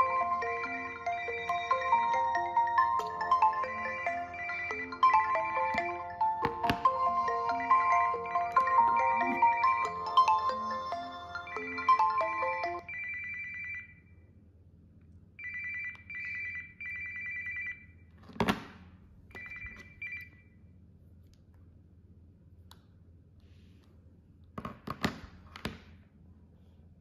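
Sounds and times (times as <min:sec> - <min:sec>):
trilling phone ringtone: 0:00.0 - 0:14.0, 0:15.4 - 0:18.0, 0:19.3 - 0:20.5.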